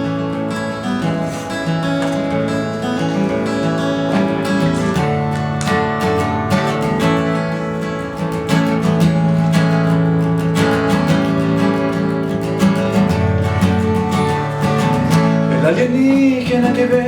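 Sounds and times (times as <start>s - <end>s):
acoustic guitar strumming: 0.0s - 17.0s.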